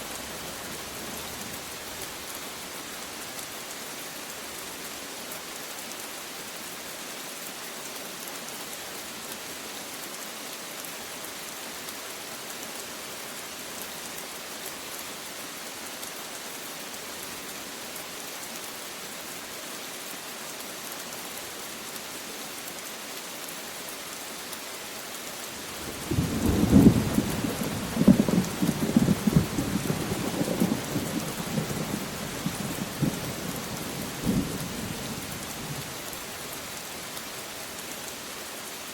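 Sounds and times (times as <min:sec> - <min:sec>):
steady rain: 0:00.0 - 0:38.9
thunder rumbling: 0:25.9 - 0:35.9.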